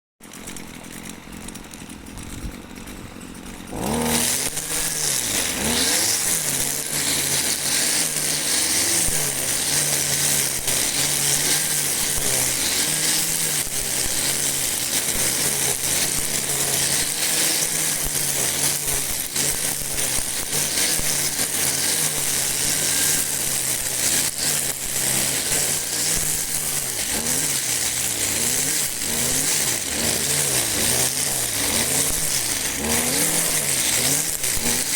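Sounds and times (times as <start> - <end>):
string trimmer engine revving: 0.2 - 34.9.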